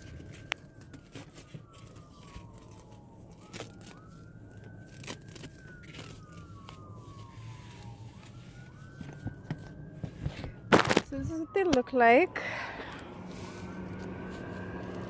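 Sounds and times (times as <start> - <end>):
handling clicks and rustles: 0.0 - 12.0
emergency vehicle siren wailing: 0.0 - 15.0.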